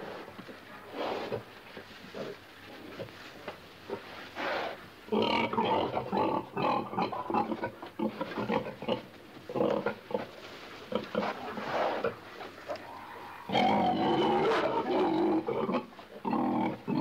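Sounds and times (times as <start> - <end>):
pigs grunting and oinking: 5.1 - 10.3, 10.9 - 17.0.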